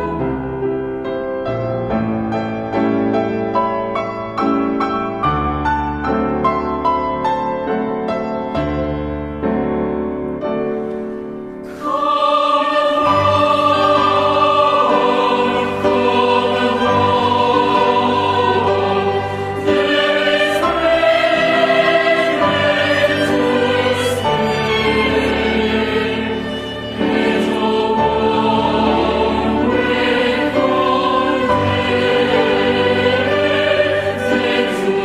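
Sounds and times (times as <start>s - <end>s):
choir singing: 0.0s - 0.5s, 11.6s - 35.0s
solo piano: 0.0s - 11.9s, 12.9s - 35.0s.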